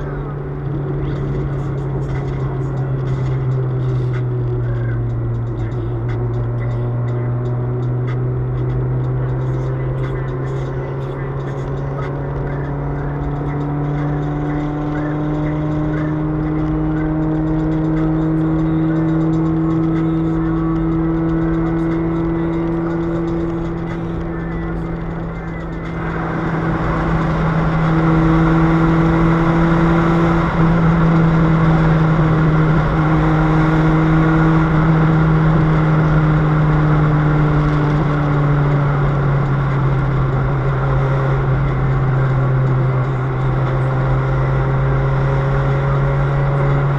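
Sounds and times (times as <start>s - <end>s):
car engine droning through broken exhaust: 0.0s - 46.9s.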